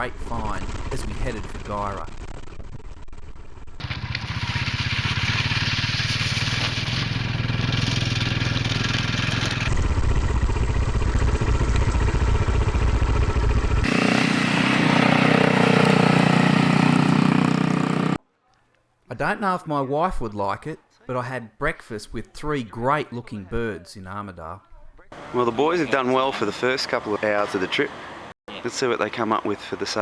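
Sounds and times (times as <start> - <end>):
motorcycle engines running: 0.0 - 18.2, 25.2 - 28.3.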